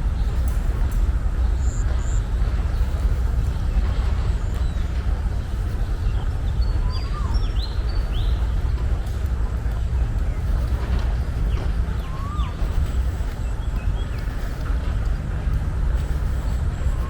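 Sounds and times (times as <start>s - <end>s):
birds chirping: 0.0s - 17.0s
steady low rumble: 0.0s - 17.0s
whistled bird chirps: 6.6s - 8.4s.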